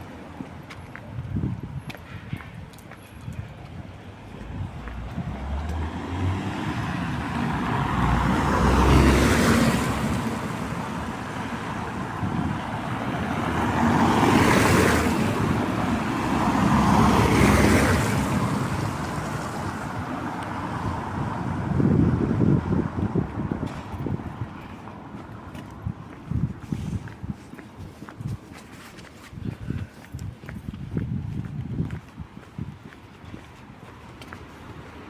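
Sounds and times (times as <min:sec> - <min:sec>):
tyres hissing on wet street: 0:04.2 - 0:21.7.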